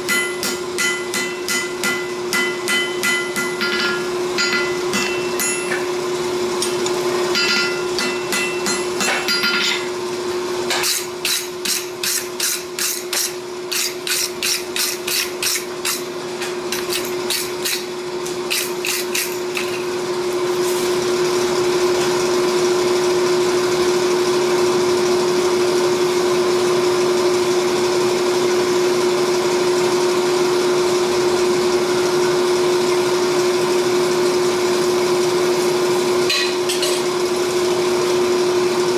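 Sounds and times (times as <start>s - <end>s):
hammer striking steel on anvil: 0.0s - 6.0s, 6.6s - 10.0s, 10.7s - 16.1s, 16.7s - 21.0s, 36.3s - 37.2s
steady hum: 0.0s - 9.9s.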